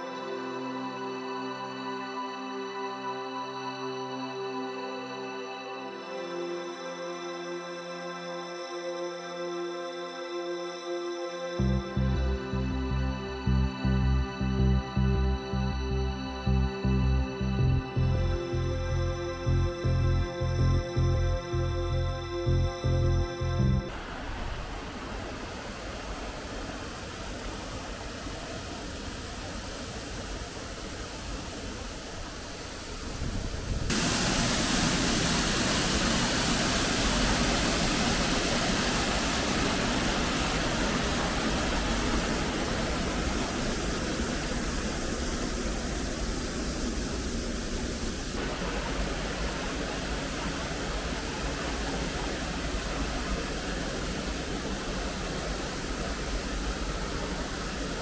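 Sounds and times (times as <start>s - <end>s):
waterfall rushing water: 23.9s - 58.0s.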